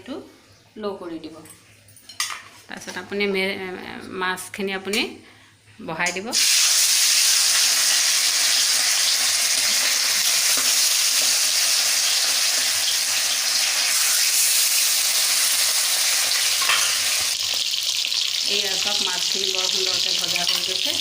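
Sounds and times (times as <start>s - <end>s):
fish frying in hot oil: 6.4s - 21.0s.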